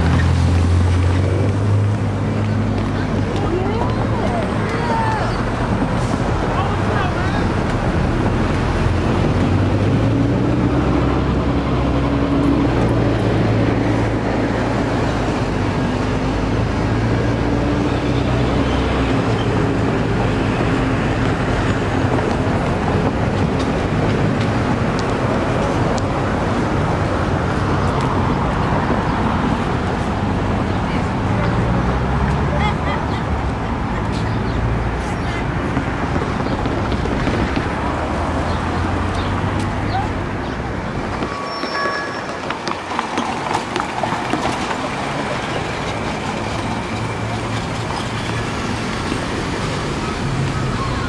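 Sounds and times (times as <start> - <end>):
wheels clicking on rails: 41.0 - 51.0.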